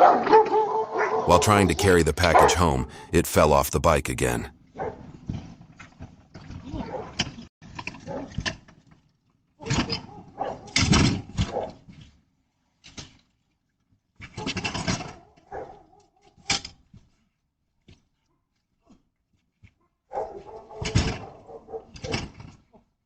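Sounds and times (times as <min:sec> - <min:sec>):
dog barking: 0:00.0 - 0:01.3, 0:10.1 - 0:10.7, 0:15.5 - 0:15.8, 0:20.1 - 0:21.9.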